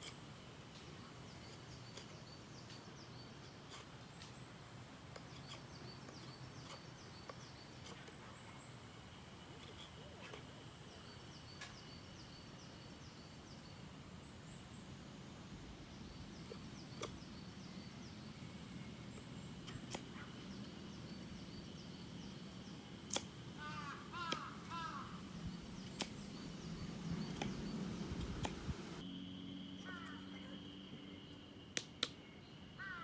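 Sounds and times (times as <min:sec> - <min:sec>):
small birds chirping: 0:00.0 - 0:29.1
steady low background noise: 0:00.1 - 0:33.0
sharp clicks or snaps: 0:23.1 - 0:23.3.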